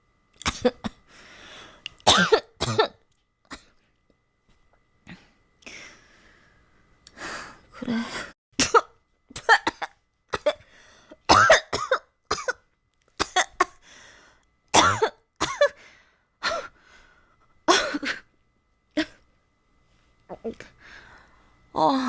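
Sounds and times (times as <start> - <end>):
girl coughing: 0.5 - 1.0, 2.1 - 3.7, 8.6 - 10.6, 11.3 - 12.6, 13.2 - 13.8, 14.8 - 15.8, 17.7 - 18.2.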